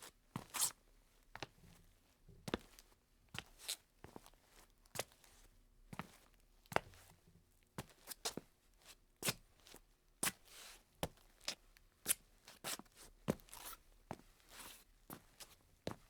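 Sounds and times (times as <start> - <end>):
shoe soles scuffing: 0.4 - 0.8, 12.1 - 16.0.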